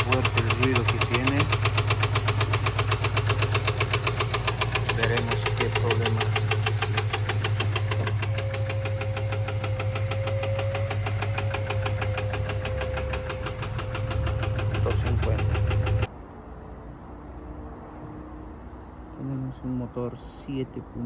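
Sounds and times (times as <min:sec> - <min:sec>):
engine running: 0:00.0 - 0:16.1
rapid ticking knock from valvetrain: 0:00.0 - 0:16.1.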